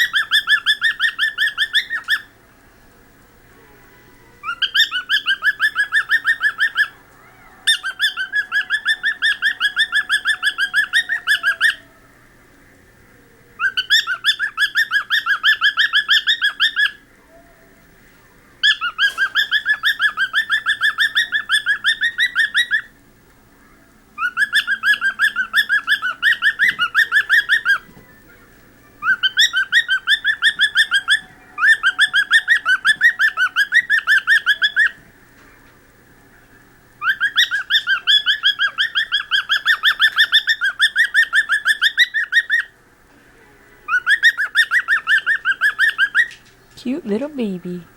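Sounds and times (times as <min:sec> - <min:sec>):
cockatiel chirping: 0:00.0 - 0:02.3, 0:04.4 - 0:07.0, 0:07.7 - 0:11.9, 0:13.6 - 0:17.0, 0:18.6 - 0:22.9, 0:24.2 - 0:27.9, 0:29.0 - 0:35.0, 0:37.0 - 0:42.7, 0:43.9 - 0:46.4.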